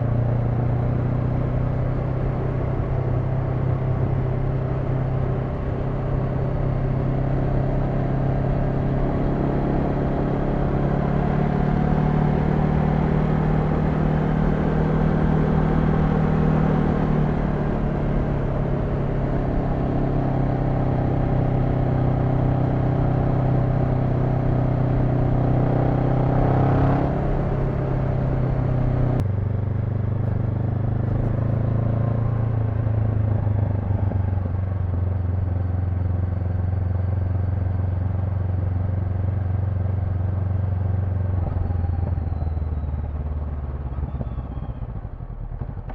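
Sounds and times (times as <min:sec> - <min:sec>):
motorcycle engine running: 0:00.0 - 0:45.9
wind and road noise: 0:00.0 - 0:45.9.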